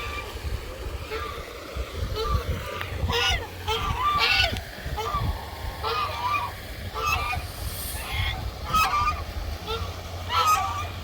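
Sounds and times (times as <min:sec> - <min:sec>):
low steady rumble: 0:00.0 - 0:11.0
geese honking: 0:03.1 - 0:11.0.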